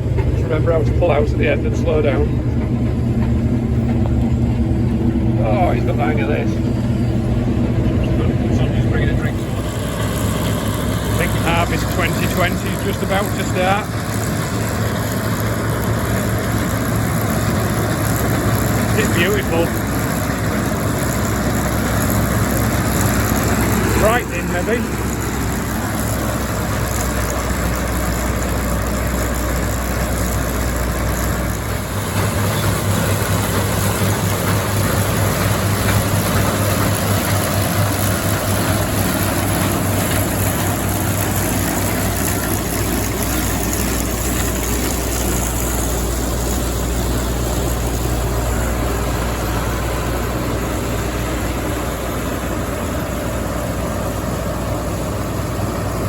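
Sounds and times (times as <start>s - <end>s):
combine harvester drone: 0.0s - 56.0s.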